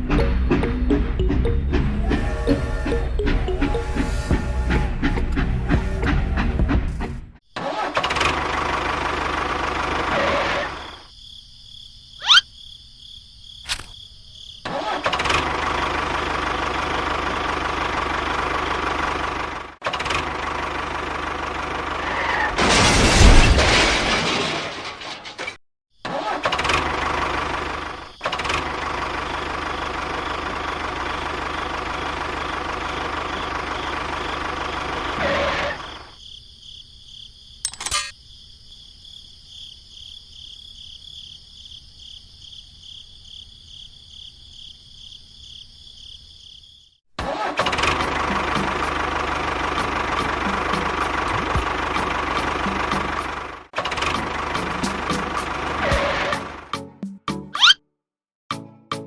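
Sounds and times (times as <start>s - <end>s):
small motor running: 2.0s - 6.0s
sharp click: 13.7s - 14.0s.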